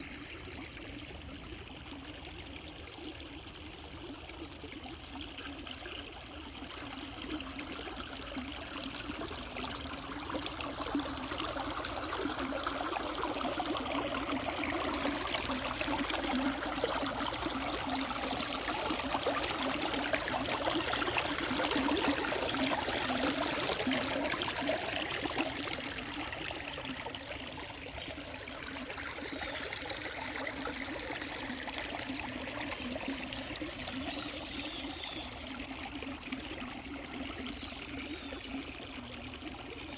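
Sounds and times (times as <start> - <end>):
river water over rocks: 8.9 - 39.8.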